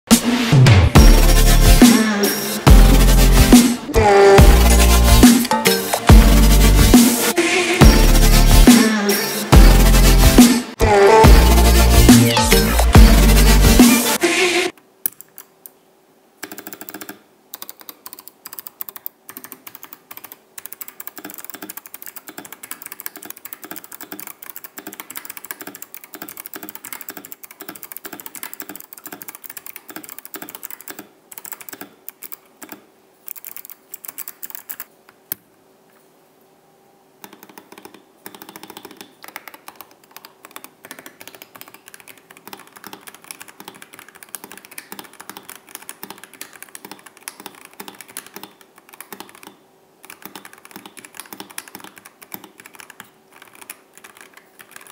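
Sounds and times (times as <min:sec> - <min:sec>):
mechanical keyboard typing: 0:16.4 - 0:34.9, 0:37.2 - 0:54.9.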